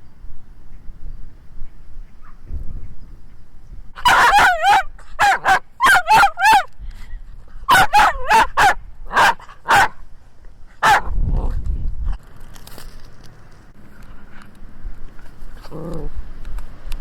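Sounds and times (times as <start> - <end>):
wind rumble on microphone: 0.0 - 4.1, 6.2 - 17.0
small dog yapping: 4.0 - 6.7, 7.7 - 9.9, 10.8 - 11.1.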